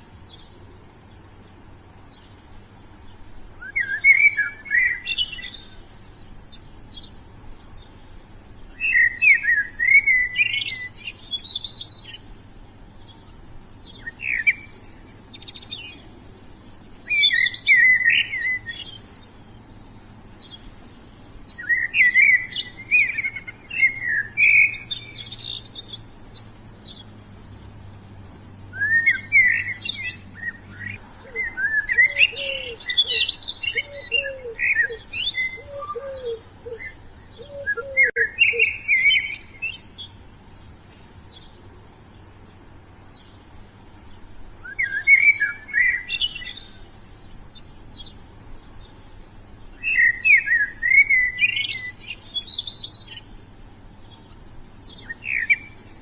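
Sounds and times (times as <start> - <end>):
songbirds chirping: 0.0 - 56.0.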